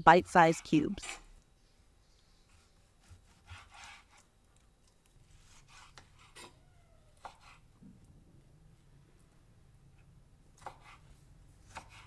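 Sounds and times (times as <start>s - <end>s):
knife cutting meat on cutting board: 2.5s - 4.3s, 5.3s - 6.6s, 7.2s - 7.7s, 10.6s - 12.0s.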